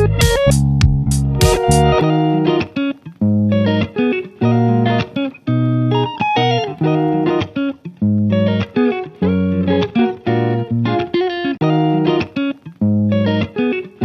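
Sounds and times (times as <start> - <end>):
bass line: 0.0 - 2.1
plucked guitar notes: 0.0 - 14.0.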